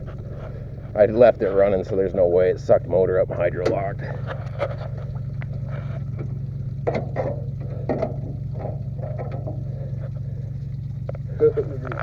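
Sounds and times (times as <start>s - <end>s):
pickup engine idling: 0.0s - 12.0s
metallic knocks and clatters: 4.4s - 9.8s.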